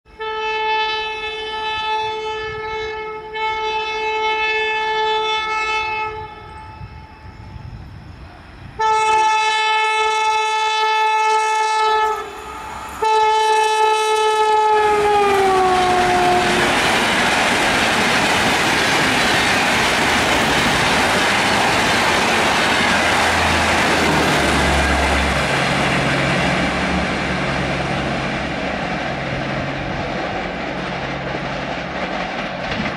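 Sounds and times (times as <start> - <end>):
locomotive horn blasts: 0.1 - 7.1, 8.8 - 16.7
train coaches rushing and clattering: 10.0 - 32.9.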